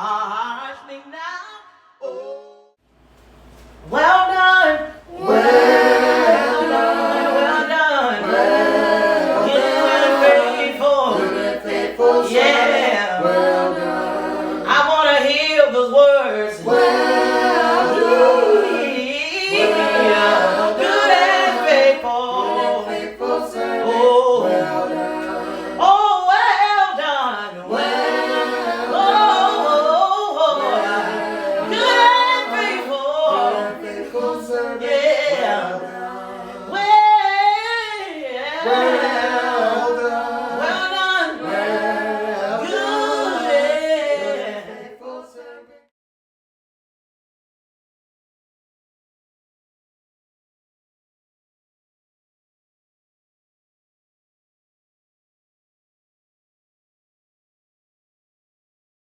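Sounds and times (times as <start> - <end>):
group singing gospel a cappella: 0.0 - 2.8, 3.8 - 45.9.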